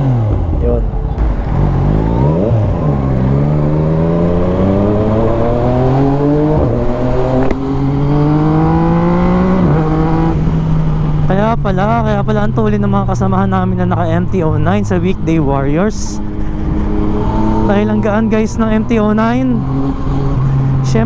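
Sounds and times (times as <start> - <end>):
gear upshifts: 0.0 - 11.3
motorcycle engine revving: 0.0 - 21.0.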